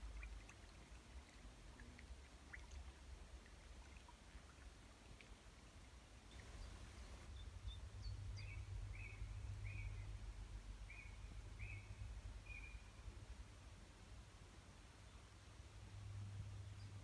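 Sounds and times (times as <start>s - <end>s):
bird chirping: 6.3s - 10.1s, 10.9s - 13.0s.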